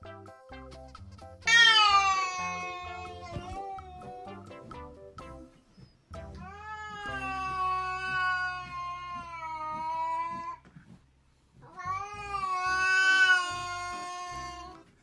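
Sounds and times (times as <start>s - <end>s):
cat meowing: 1.5s - 4.3s, 6.4s - 10.6s, 11.6s - 14.9s.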